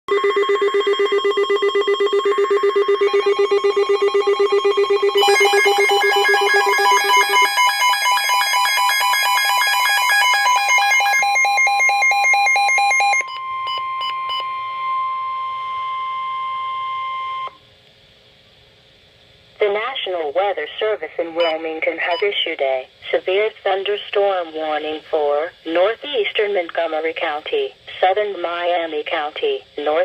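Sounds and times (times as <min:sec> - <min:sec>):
pulsing beeps at several pitches: 0:00.1 - 0:17.5
pulsing ringing tone: 0:00.1 - 0:17.5
steady high attention tone: 0:00.2 - 0:17.6.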